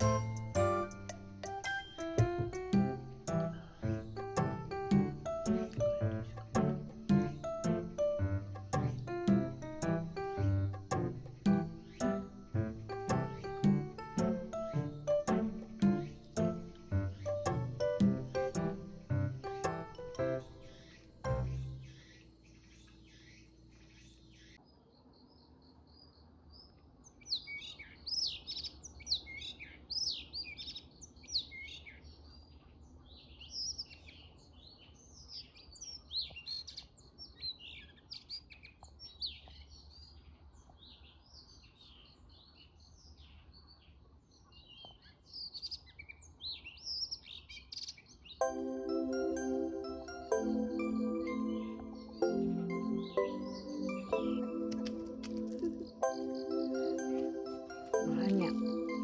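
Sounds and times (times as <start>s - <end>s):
music: 0.0s - 22.0s, 48.4s - 59.0s
small birds chirping: 0.0s - 59.0s.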